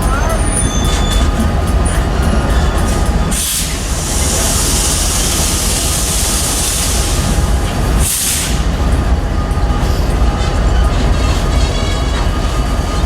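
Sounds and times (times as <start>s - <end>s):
freight train rumbling: 0.0s - 13.0s
loud high hiss: 3.3s - 8.6s.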